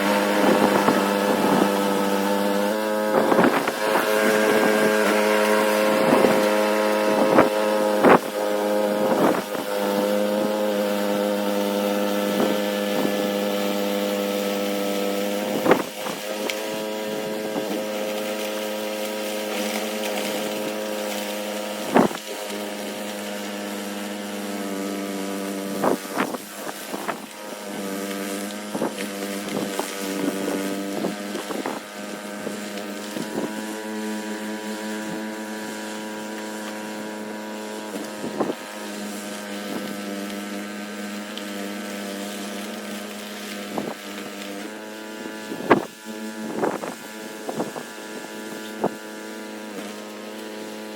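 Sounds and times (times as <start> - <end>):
engine running steadily: 0.0 - 50.9
wind noise on microphone: 0.1 - 2.2, 3.0 - 5.2, 5.8 - 8.4, 15.5 - 16.2, 21.9 - 22.2, 43.7 - 44.0, 45.2 - 49.0.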